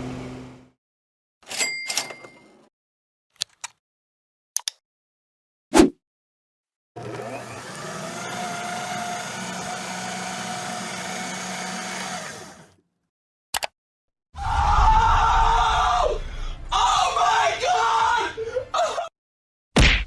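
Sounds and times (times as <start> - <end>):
small electric motor running: 7.0 - 12.8.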